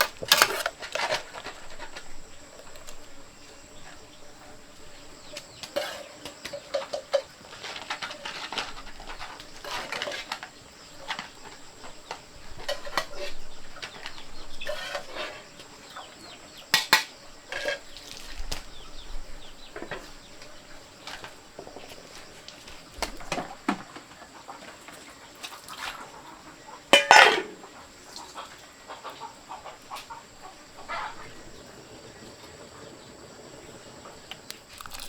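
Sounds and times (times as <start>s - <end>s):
chickens clucking: 3.6s - 22.3s, 23.0s - 34.6s
dishes clinking: 26.9s - 27.7s.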